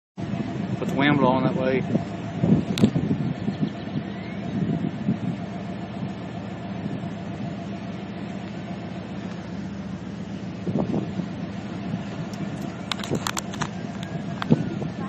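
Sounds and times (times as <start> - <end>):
wind-like rush: 0.2 - 5.7, 10.4 - 15.0
low engine hum: 0.2 - 15.0.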